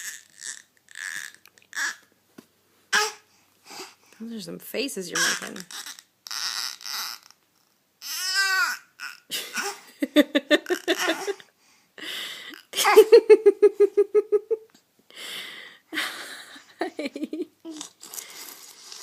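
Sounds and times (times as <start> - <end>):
baby squealing and babbling: 0.0 - 2.0, 2.9 - 3.2, 5.2 - 9.8.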